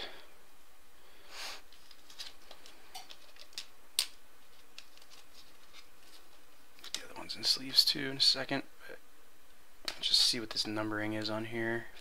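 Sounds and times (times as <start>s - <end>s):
card rustling in plastic sleeve: 1.7s - 7.1s.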